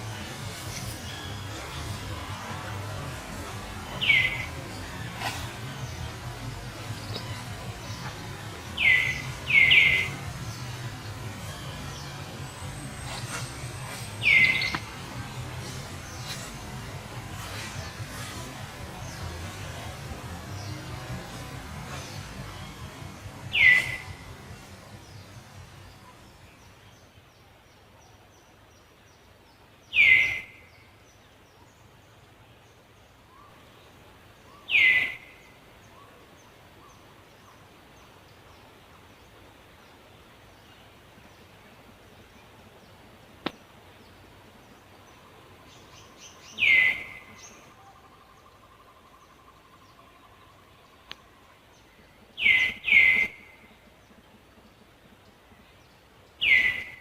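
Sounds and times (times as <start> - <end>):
high continuous chirping: 0.0 - 26.8.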